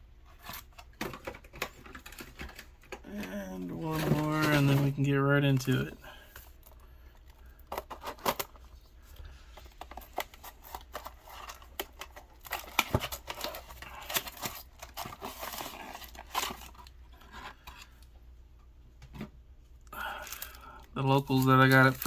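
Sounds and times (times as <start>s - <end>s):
plastic wrapping crinkling: 7.5s - 18.0s, 20.1s - 22.0s.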